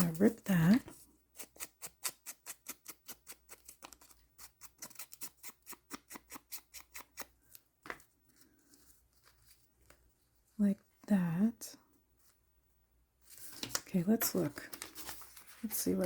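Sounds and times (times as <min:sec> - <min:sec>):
scissors snipping paper: 0:00.0 - 0:07.3.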